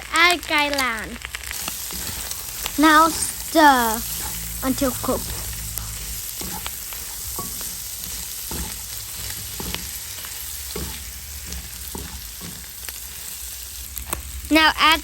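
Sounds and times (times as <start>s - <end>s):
food sizzling in a pan: 0.0s - 15.0s
stirring scrapes against pan: 1.4s - 14.3s.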